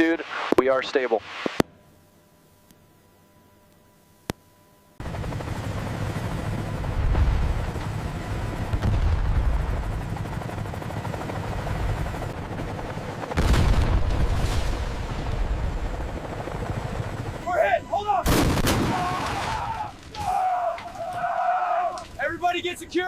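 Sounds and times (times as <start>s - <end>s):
helicopter rotor thudding: 5.0s - 17.4s
loud blast: 18.2s - 20.3s.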